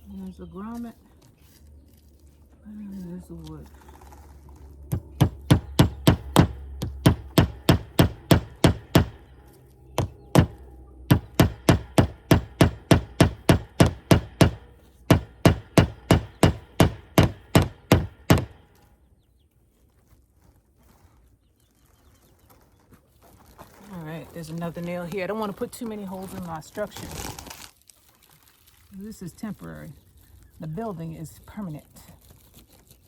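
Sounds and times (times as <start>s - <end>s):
hammer striking nail into wood: 4.9s - 9.4s, 10.0s - 18.7s.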